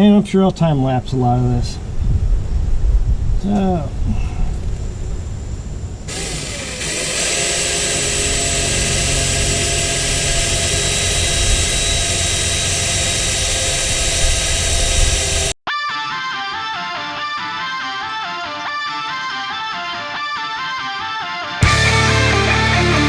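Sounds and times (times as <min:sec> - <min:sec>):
power drill whine: 0:04.7 - 0:15.6.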